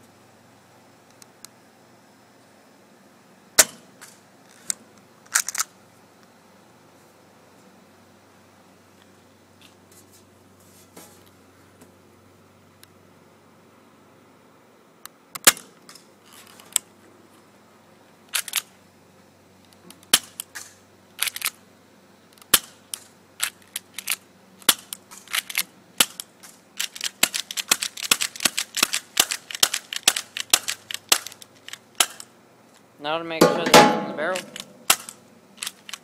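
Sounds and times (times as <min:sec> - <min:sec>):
airsoft pistol shots: 0:03.6 - 0:03.8, 0:33.4 - 0:35.2.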